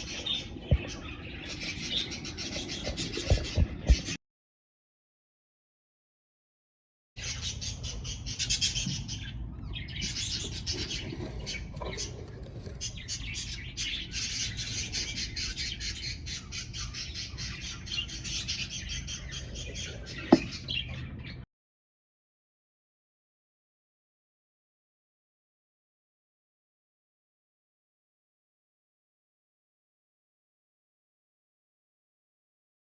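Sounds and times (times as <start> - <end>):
budgerigars chattering and squawking: 0.0 - 4.2, 7.2 - 21.4.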